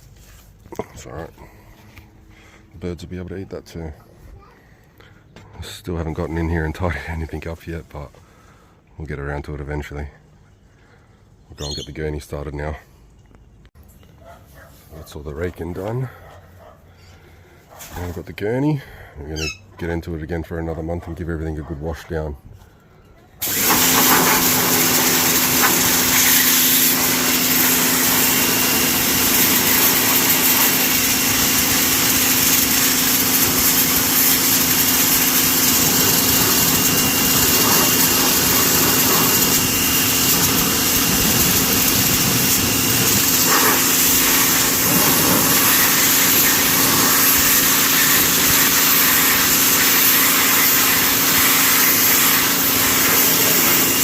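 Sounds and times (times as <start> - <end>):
pressure washer hiss: 23.4 - 54.0
pressure washer motor hum: 23.4 - 54.0.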